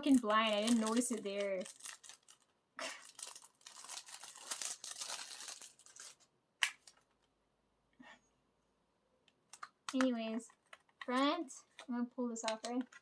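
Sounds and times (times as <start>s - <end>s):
plastic wrap crinkling and tearing: 0.0s - 7.2s.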